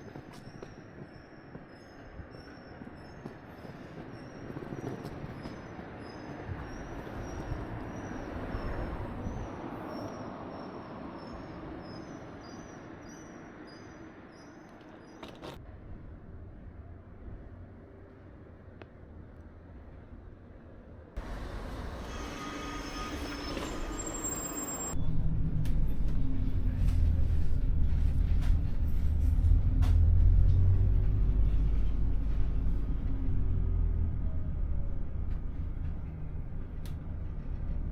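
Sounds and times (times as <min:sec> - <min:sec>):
rail vehicle rumbling past: 0:20.0 - 0:37.9.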